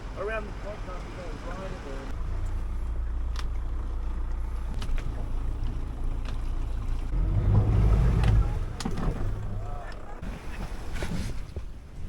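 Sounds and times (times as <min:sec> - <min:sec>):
boat engine running at low revs: 0:01.7 - 0:11.0.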